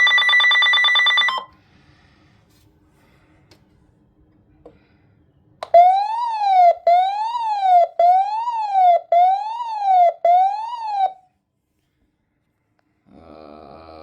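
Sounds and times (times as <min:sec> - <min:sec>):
electronic alert siren: 0:05.6 - 0:11.2.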